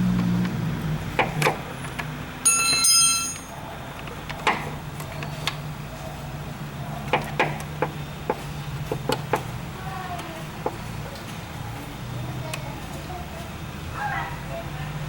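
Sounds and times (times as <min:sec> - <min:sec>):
high metallic ring: 0:02.4 - 0:03.6.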